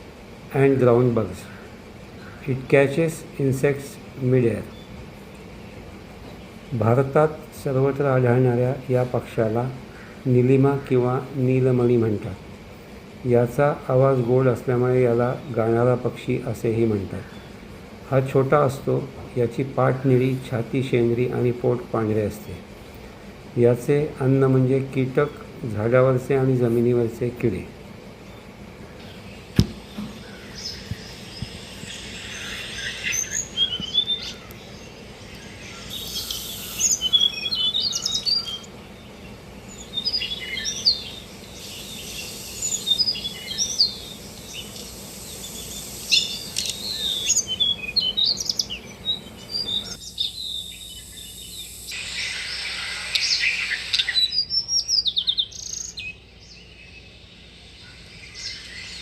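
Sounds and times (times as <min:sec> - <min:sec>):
bird singing high twittering phrases: 0:28.2 - 0:59.0.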